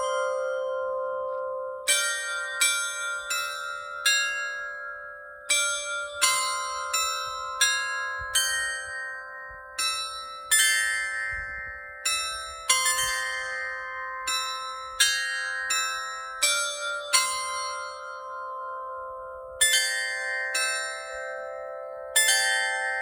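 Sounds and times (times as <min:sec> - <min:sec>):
tuned bells playing melody: 0:00.0 - 0:23.0.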